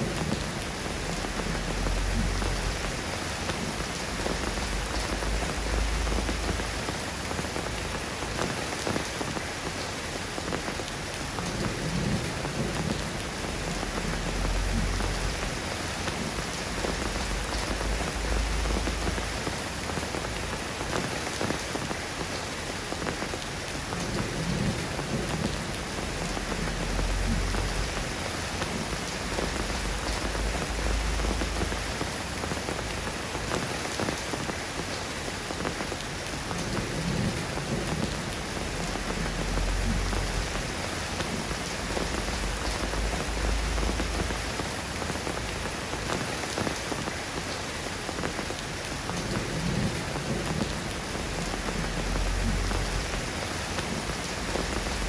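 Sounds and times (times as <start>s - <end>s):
rain falling: 0.0s - 55.0s
low rumble: 38.6s - 44.8s.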